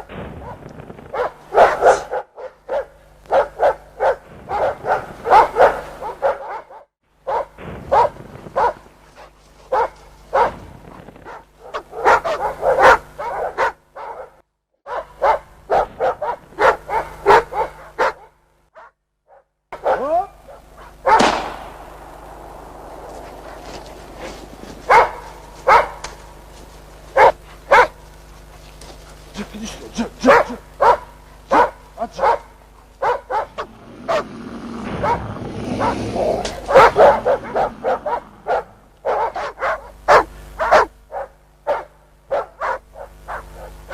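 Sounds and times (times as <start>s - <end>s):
dogs barking: 0.0s - 43.9s.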